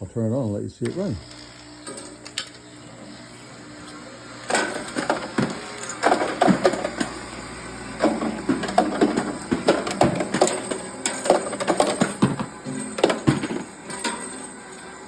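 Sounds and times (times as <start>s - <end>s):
cartridges clattering in sorter: 1.8s - 2.6s, 4.4s - 15.0s.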